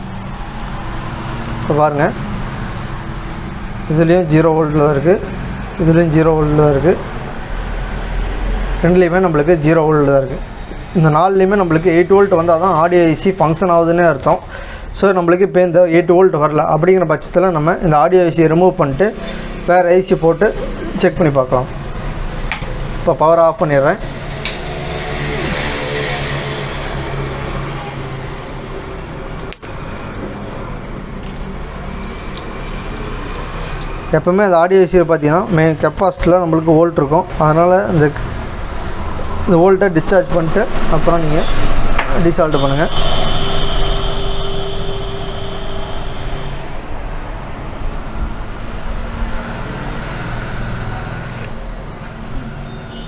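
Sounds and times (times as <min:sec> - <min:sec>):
steady tone: 0:00.0 - 0:22.6, 0:37.5 - 0:52.7
distant road traffic: 0:00.0 - 0:53.0
low steady hum: 0:38.0 - 0:49.8.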